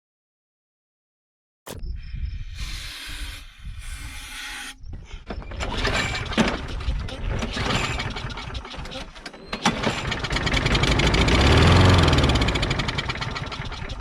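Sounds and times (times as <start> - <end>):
low rumble: 1.7 - 5.3
mower engine cranking: 5.3 - 14.0
rattling clicks and clatter: 5.3 - 14.0.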